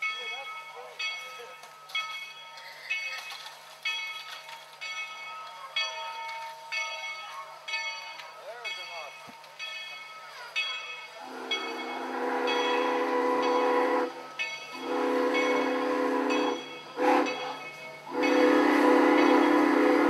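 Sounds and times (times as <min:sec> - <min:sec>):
steam hissing: 0:11.1 - 0:20.0
train whistle blowing a chord: 0:11.2 - 0:14.2, 0:14.8 - 0:17.4, 0:18.1 - 0:20.0.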